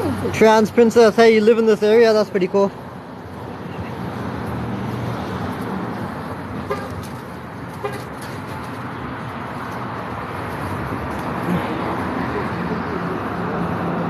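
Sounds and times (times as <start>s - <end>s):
street traffic: 0.0s - 14.0s
vehicle horn toots: 6.6s - 7.0s.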